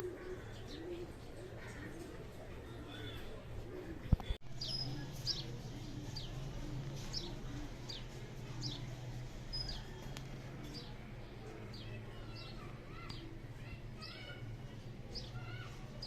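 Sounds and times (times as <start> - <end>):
songbird chirping: 4.4 - 14.4.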